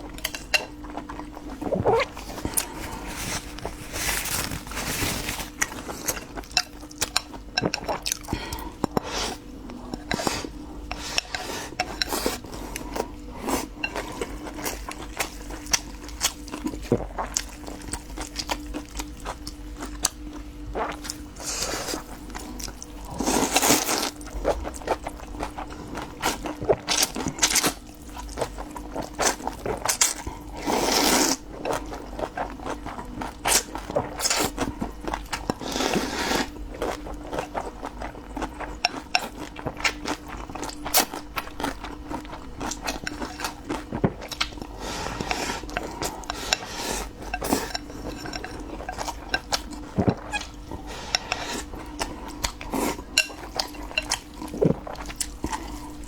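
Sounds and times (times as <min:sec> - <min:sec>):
faint steady hum: 0:00.0 - 0:56.0
chewing: 0:36.8 - 0:56.0.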